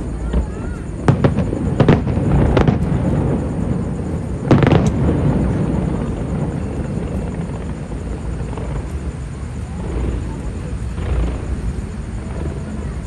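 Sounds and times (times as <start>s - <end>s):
fireworks bangs: 0.0s - 13.0s
low rumble of bursts: 0.0s - 13.0s.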